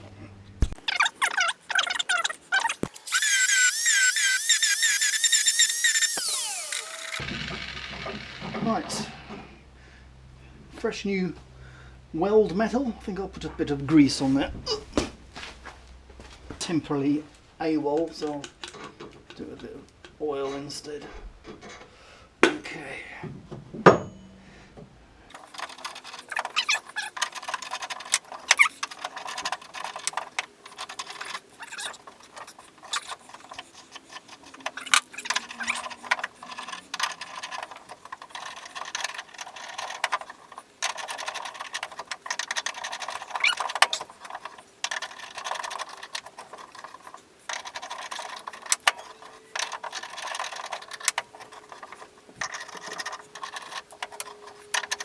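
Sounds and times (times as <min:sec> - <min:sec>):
threading die scraping metal: 0:00.8 - 0:07.2, 0:25.3 - 0:55.0.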